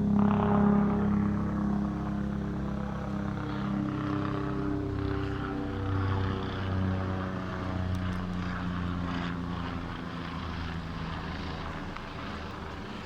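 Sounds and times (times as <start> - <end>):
helicopter flying past: 0.0 - 13.0.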